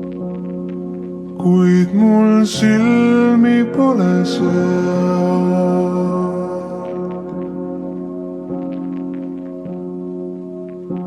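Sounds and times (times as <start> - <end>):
slowed-down sustained chord: 1.3 - 9.7.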